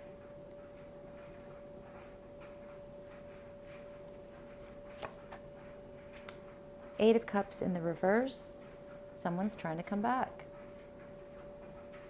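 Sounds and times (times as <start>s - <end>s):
faint steady hum: 0.0s - 12.0s
cards rustling and ticking: 4.5s - 6.3s.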